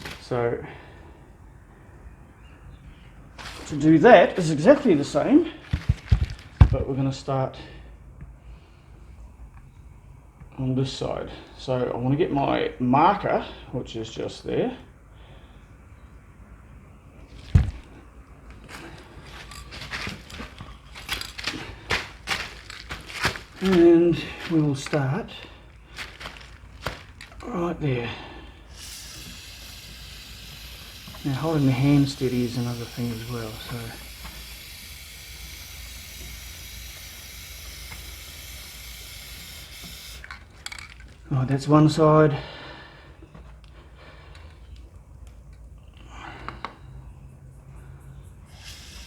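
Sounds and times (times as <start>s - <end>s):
aerosol spray hissing: 5.6s - 6.9s, 28.6s - 40.4s, 48.5s - 49.0s
small clicks and scrapes of tools: 18.5s - 23.7s, 39.8s - 41.2s.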